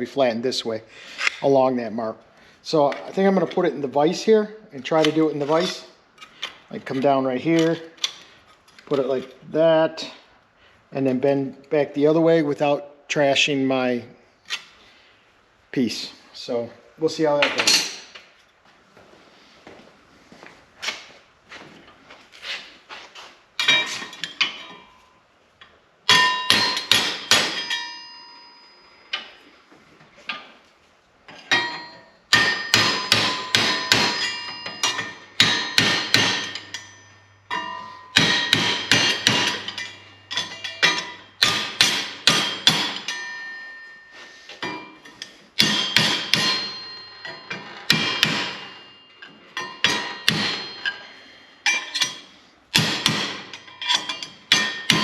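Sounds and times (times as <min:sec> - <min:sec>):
hammer ringing on steel: 0:26.1 - 0:29.1, 0:31.5 - 0:45.0, 0:45.6 - 0:52.2, 0:52.8 - 0:55.0.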